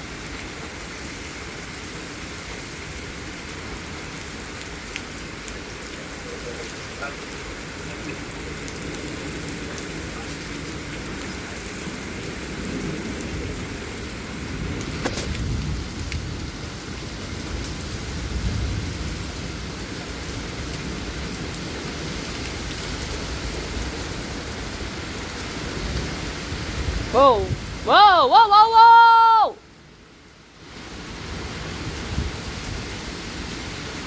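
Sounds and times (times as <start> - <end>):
heavy rain and wind: 0.0 - 34.0
low rumbling thunder: 8.4 - 27.9.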